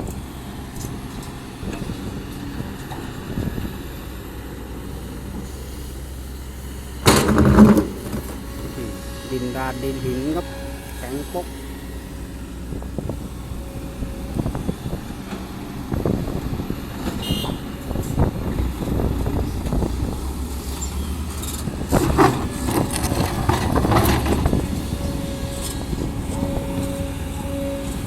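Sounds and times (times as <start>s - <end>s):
excavator diesel engine: 0.0s - 28.0s
steel bucket scraping on stone: 7.1s - 9.0s.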